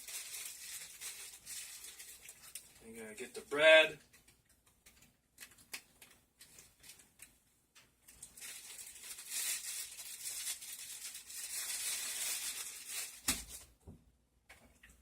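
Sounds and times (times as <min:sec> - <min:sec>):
plastic bag rustling: 0:00.0 - 0:02.8, 0:05.9 - 0:07.3, 0:08.1 - 0:13.8.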